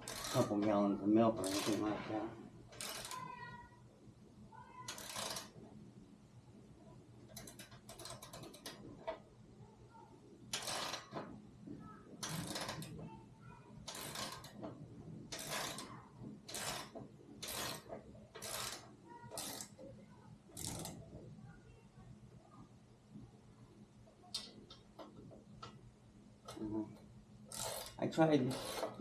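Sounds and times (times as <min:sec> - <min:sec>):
ratchet wrench clicking: 0:00.0 - 0:00.5, 0:02.8 - 0:03.3, 0:04.9 - 0:05.5, 0:07.3 - 0:08.8, 0:10.5 - 0:11.1, 0:12.2 - 0:12.9, 0:13.9 - 0:14.6, 0:15.3 - 0:15.9, 0:16.5 - 0:19.8, 0:20.6 - 0:21.0, 0:27.5 - 0:29.0.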